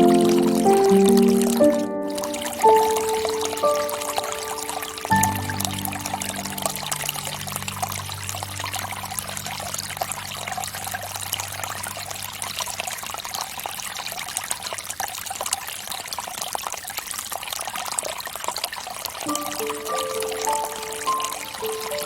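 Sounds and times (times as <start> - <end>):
low music notes: 0.0 - 10.5
fountain water trickling and splashing: 0.0 - 22.0.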